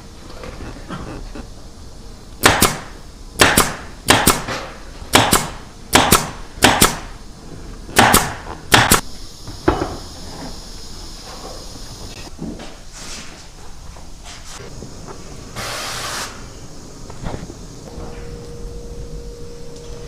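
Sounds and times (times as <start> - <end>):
factory background noise: 0.0 - 20.0
pneumatic staple gun firing: 2.4 - 4.6, 5.2 - 7.1, 8.0 - 9.0.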